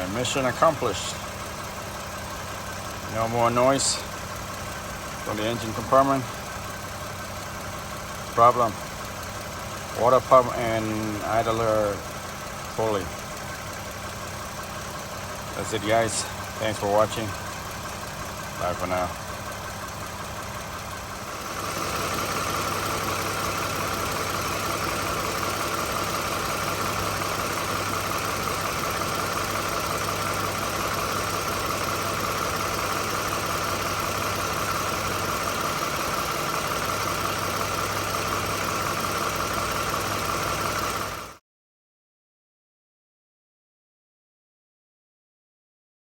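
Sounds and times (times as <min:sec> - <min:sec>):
car engine idling: 0:00.0 - 0:41.4.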